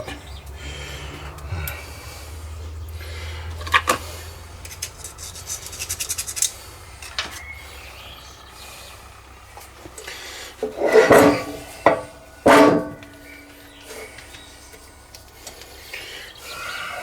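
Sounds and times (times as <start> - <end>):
low steady hum: 0.0 - 17.0
rattling ticks: 2.8 - 8.1
metal-on-metal clicks: 4.6 - 7.5.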